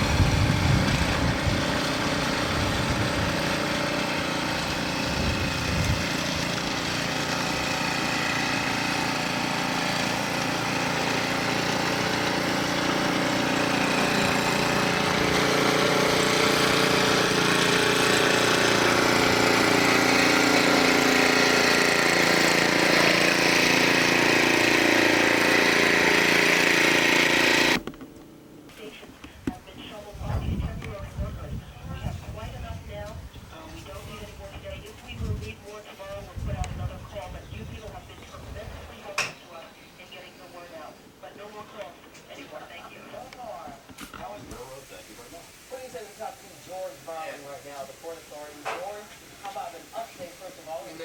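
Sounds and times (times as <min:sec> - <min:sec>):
snowblower engine running: 0:00.0 - 0:28.9.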